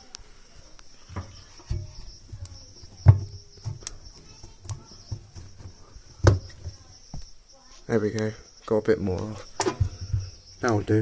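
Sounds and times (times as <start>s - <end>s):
sharp handling knocks: 1.1s - 7.3s, 9.4s - 10.8s.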